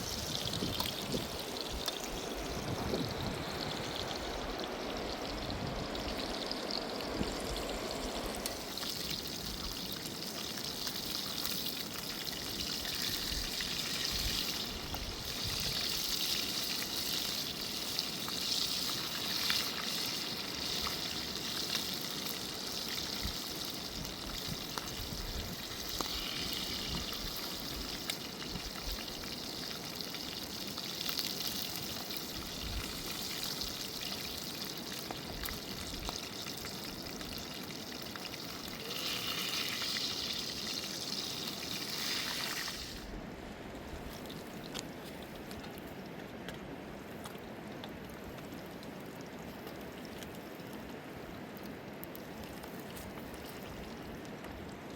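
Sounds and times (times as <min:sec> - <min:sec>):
water rushing and splashing: 0:00.0 - 0:10.2.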